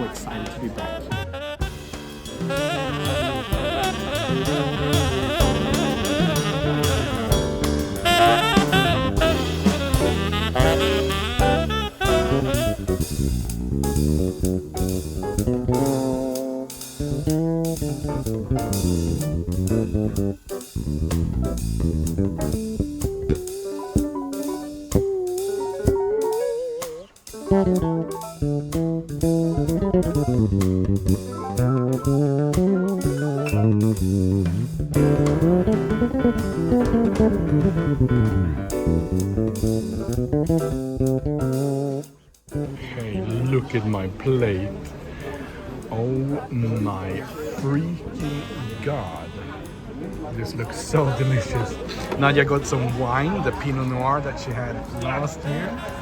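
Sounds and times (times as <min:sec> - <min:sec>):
band playing with steady beat: 0:00.0 - 0:44.1, 0:45.8 - 0:56.0.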